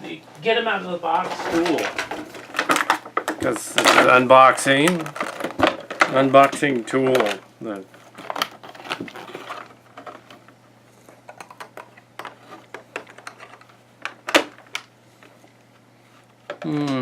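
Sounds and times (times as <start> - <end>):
plastic packaging clicks and taps: 1.8 - 4.2
person humming: 16.6 - 17.0.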